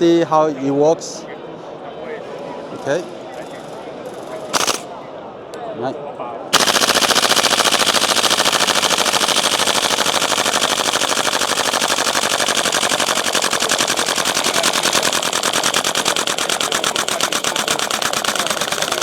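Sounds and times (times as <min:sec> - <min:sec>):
airsoft rifle full auto fire: 0:04.5 - 0:04.9, 0:06.5 - 0:19.0.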